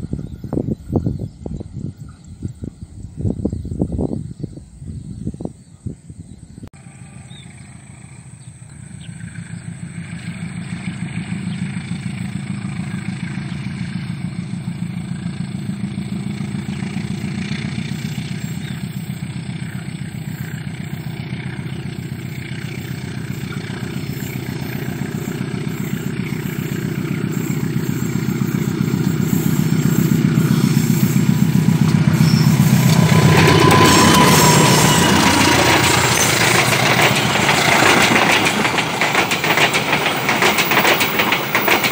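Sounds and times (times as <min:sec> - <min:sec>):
diesel locomotive engine throbbing: 0:00.0 - 0:41.9
brief high tone: 0:32.2 - 0:36.4.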